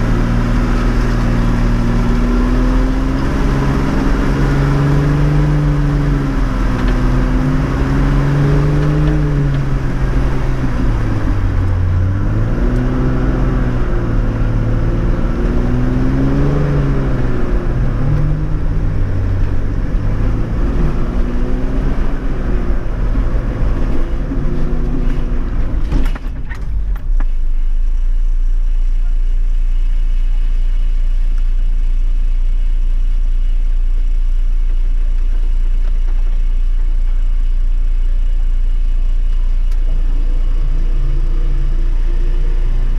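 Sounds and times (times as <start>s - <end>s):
engine revving under load: 0.0s - 26.1s.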